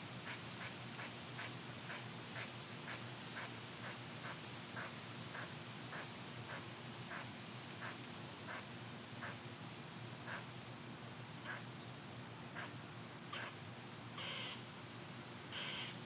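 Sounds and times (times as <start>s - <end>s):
wind hissing in a tree: 0.0s - 14.1s
squirrel alarm barks: 13.3s - 13.6s.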